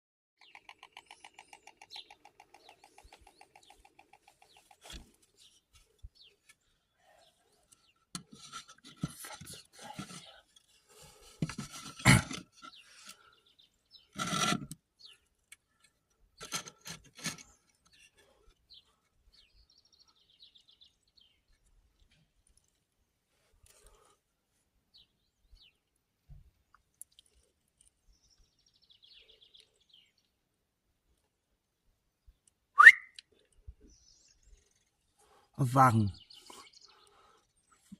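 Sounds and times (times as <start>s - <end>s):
storks bill-clattering: 0.4s - 5.2s, 8.2s - 13.2s.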